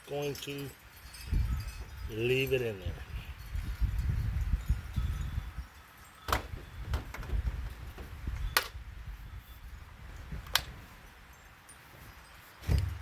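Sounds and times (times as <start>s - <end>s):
clicks and clinks of tools: 8.4s - 8.8s, 10.4s - 10.8s.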